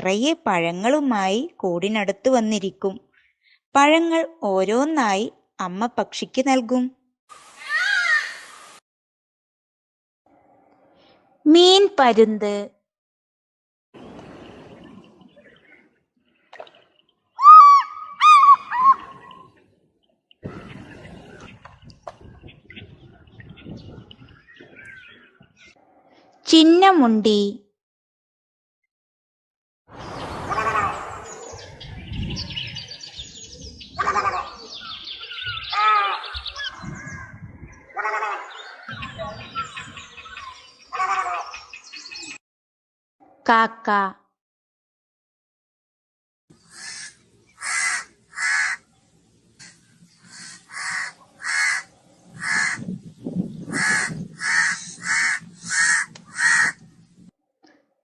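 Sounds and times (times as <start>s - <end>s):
birds chirping and twittering: 3.0s - 3.7s, 14.0s - 26.2s, 29.9s - 42.4s, 46.5s - 57.3s
louder fuller bird calls: 14.3s - 19.6s, 29.9s - 42.4s, 46.5s - 48.9s, 49.5s - 56.9s
crow cawing: 46.7s - 48.8s, 50.3s - 52.8s, 53.7s - 56.8s.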